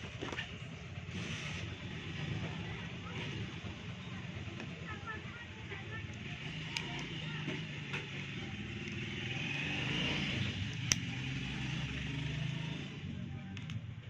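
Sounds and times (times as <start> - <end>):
vehicle engine passing by: 5.9 - 13.6.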